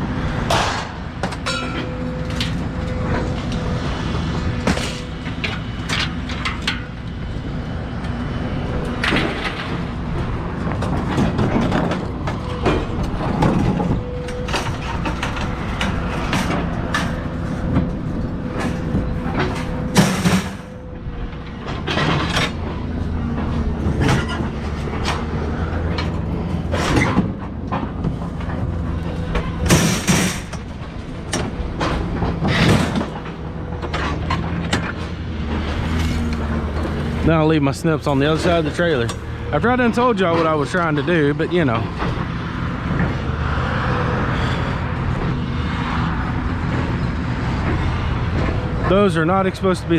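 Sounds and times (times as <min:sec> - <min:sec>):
engine running steadily: 0:00.0 - 0:49.9
scrap metal clanking: 0:00.5 - 0:03.6, 0:10.7 - 0:41.3.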